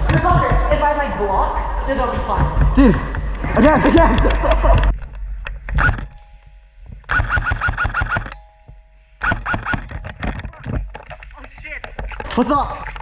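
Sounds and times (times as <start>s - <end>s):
scattered clicks: 4.1s - 8.6s, 9.2s - 13.0s
chirping tone: 5.7s - 10.6s
airsoft gun firing burst: 7.1s - 8.3s.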